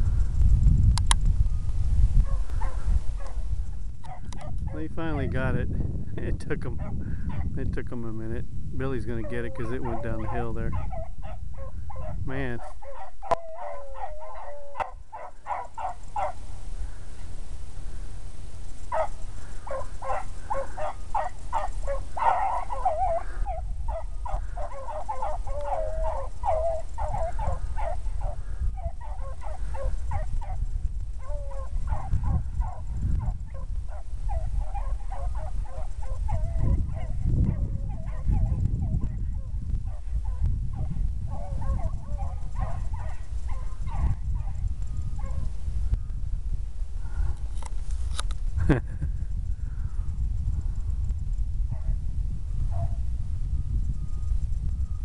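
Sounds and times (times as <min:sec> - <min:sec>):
hounds baying: 0:02.2 - 0:03.4, 0:04.0 - 0:05.5, 0:06.8 - 0:07.5, 0:09.1 - 0:16.5, 0:18.8 - 0:45.5.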